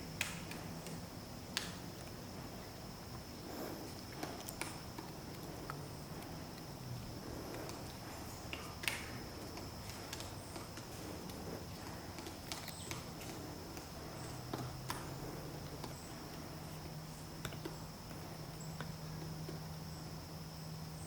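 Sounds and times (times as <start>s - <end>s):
steady high-pitched whine: 0.0s - 21.0s
woodpecker tapping on wood: 3.8s - 19.8s.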